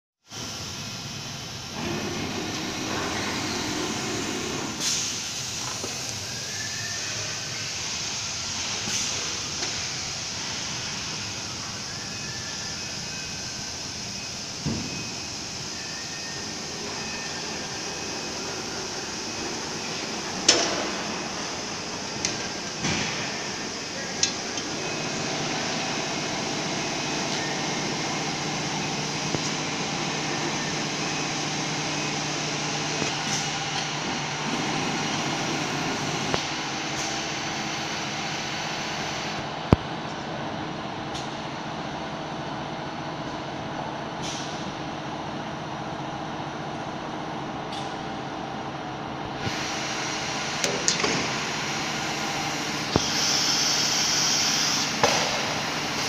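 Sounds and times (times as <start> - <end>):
machine hum: 0.5 - 4.8.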